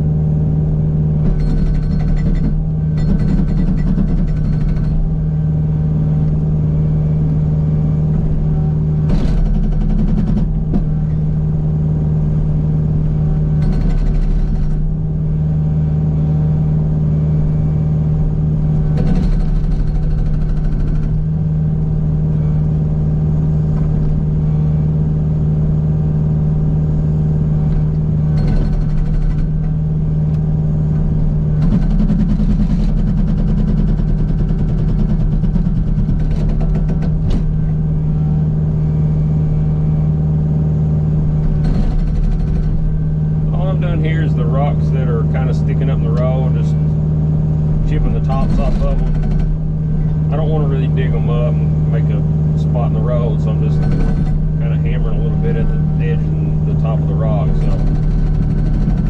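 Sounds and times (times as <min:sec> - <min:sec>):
diesel engine running: 0:00.0 - 0:59.0
hydraulic breaker hammering rock: 0:01.2 - 0:05.2, 0:09.0 - 0:11.3, 0:13.5 - 0:15.0, 0:18.8 - 0:21.4, 0:28.3 - 0:29.8, 0:31.6 - 0:37.7, 0:41.4 - 0:43.0, 0:47.8 - 0:50.6, 0:52.7 - 0:59.0.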